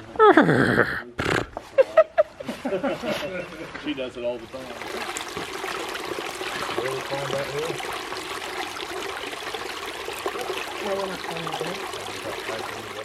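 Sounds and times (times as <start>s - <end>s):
creek water babbling over rocks: 4.5s - 13.0s.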